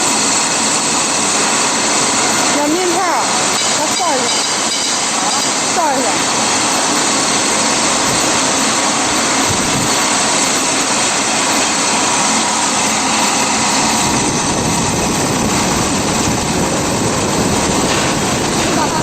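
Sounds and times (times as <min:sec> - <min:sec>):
extruder machinery running: 0:00.0 - 0:19.0.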